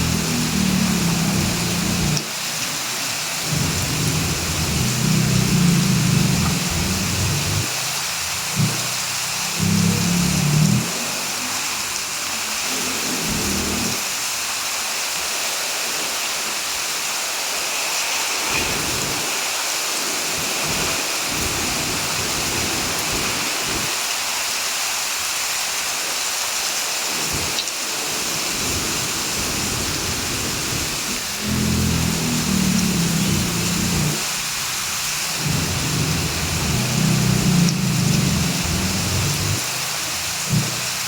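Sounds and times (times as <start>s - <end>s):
heavy rain: 0.0s - 41.0s
deep low rumbles: 3.5s - 7.7s, 31.4s - 34.3s, 35.4s - 39.6s, 40.5s - 40.8s.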